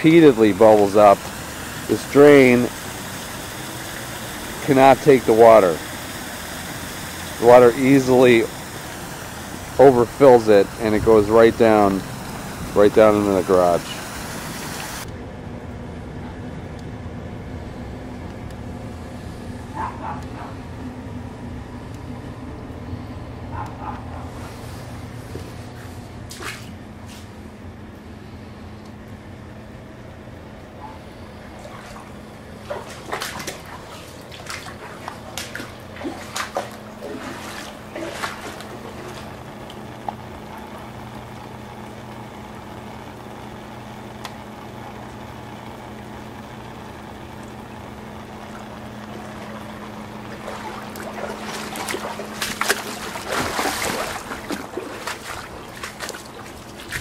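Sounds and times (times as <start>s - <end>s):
loud noisy bursts: 0.0s - 15.1s
steady low hum: 0.0s - 57.0s.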